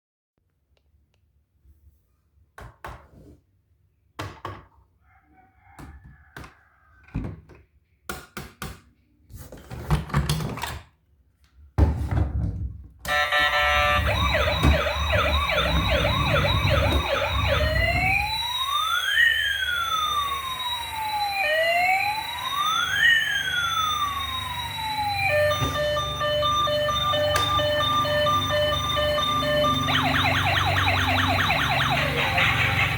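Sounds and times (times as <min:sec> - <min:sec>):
toy electronic siren: 0:13.1 - 0:32.9.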